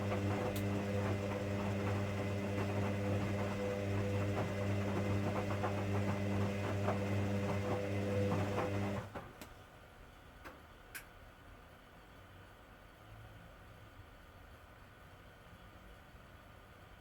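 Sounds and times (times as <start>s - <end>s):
washing machine running: 0.0s - 9.4s.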